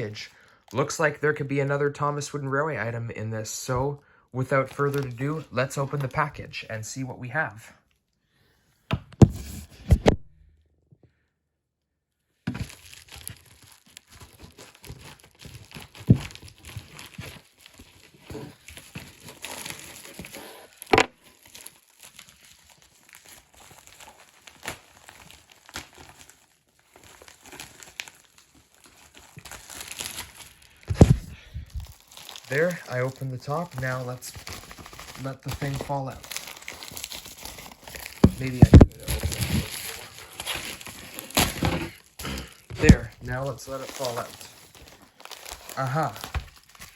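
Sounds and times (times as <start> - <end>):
packaging crinkling and tearing: 4.6 - 6.4, 12.5 - 46.9.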